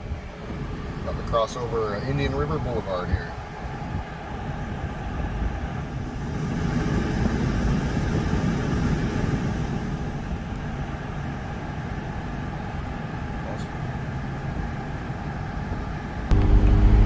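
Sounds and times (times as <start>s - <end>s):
car road and tyre rumble: 0.0s - 17.0s.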